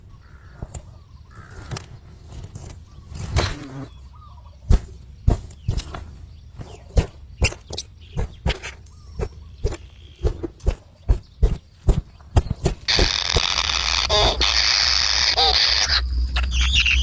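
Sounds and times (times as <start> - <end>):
faint nestling birds cheeping: 0.0 - 17.0.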